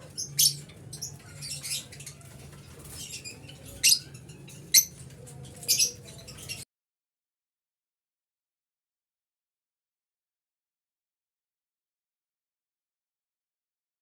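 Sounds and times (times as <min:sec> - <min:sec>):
lovebirds chirping shrilly: 0:00.0 - 0:05.0.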